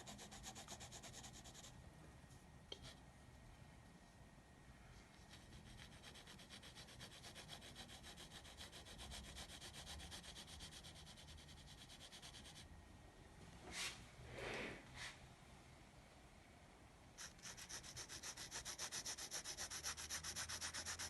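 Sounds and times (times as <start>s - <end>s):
pencil shading on paper: 17.2s - 21.0s.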